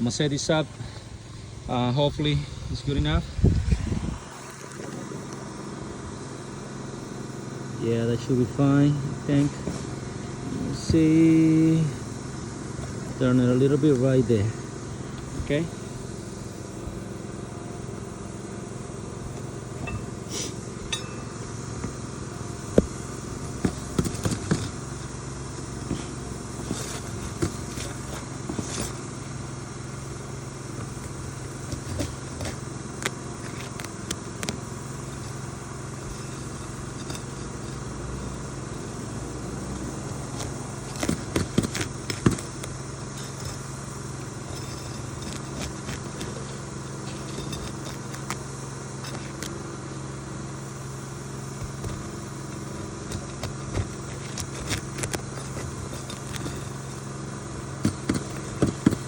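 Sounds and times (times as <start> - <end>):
steady low hum: 0.0 - 59.0
hand tool knocks on shingles: 57.8 - 59.0.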